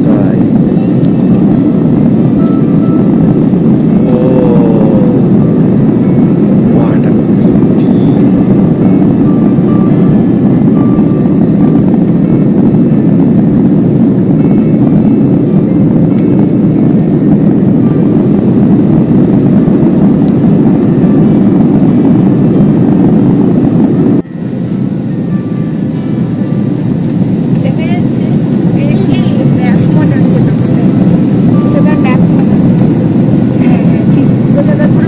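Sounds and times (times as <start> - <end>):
jet cabin engine and airflow noise: 0.0 - 35.0.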